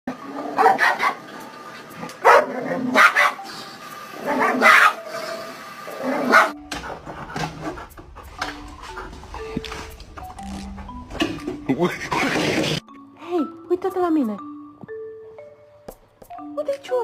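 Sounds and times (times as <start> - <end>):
dog barking: 0.6 - 1.2, 2.2 - 3.4, 4.3 - 5.0, 6.2 - 6.6.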